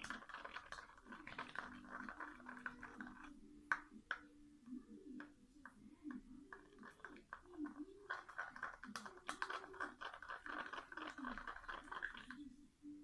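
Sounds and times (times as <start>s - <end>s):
scratchy stirring in container: 0.0s - 4.2s, 6.5s - 12.5s.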